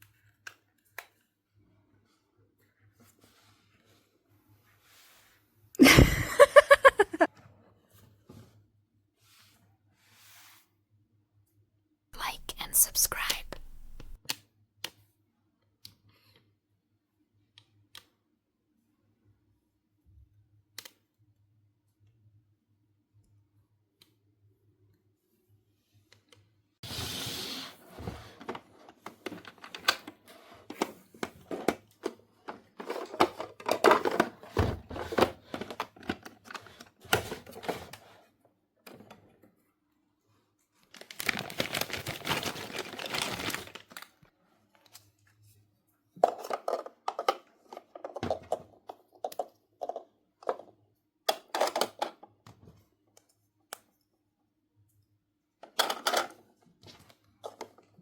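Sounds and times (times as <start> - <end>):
packaging rustling: 40.9 - 44.1.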